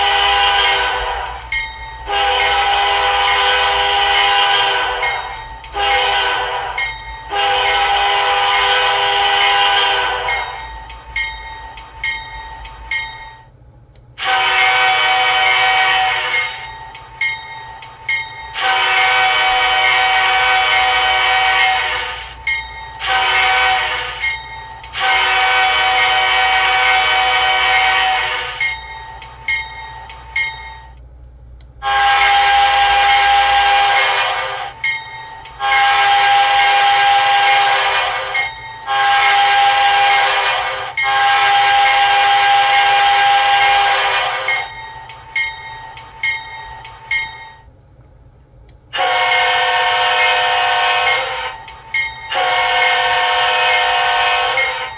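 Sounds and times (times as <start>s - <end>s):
locomotive air horn blasts: 0.0s - 1.4s, 2.1s - 10.6s, 14.2s - 16.6s, 18.6s - 22.3s, 22.9s - 24.2s, 24.9s - 28.6s, 31.8s - 34.7s, 35.6s - 44.6s, 49.0s - 51.6s, 52.3s - 54.9s.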